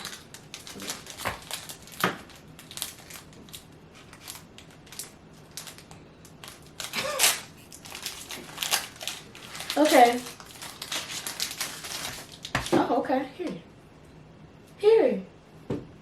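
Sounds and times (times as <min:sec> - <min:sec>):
crunching snack: 0:00.0 - 0:01.9
plastic wrapper crinkling: 0:00.0 - 0:12.8.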